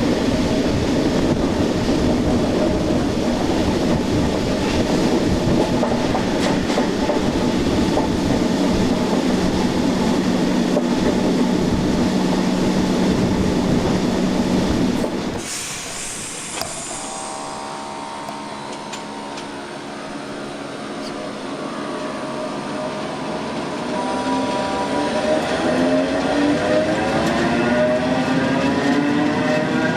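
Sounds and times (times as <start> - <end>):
stationary train humming: 0.0 - 29.9
train rumbling: 0.0 - 29.9
traction motor whine: 14.5 - 23.6.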